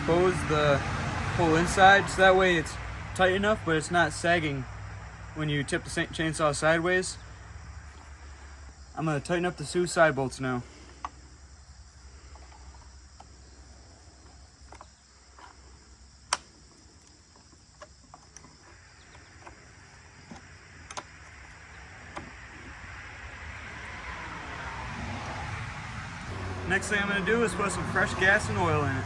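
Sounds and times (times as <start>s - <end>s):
crickets chirring: 0.1s - 29.0s
rushing noise: 26.2s - 29.0s.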